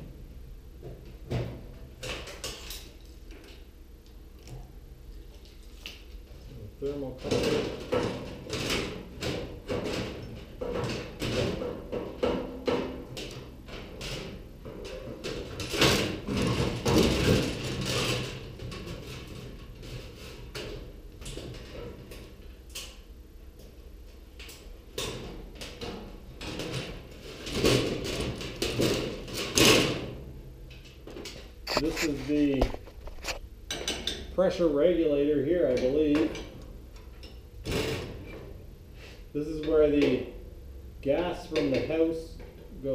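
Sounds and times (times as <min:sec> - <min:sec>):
sheet metal clattering and clanking: 0:07.2 - 0:22.2, 0:25.0 - 0:30.2.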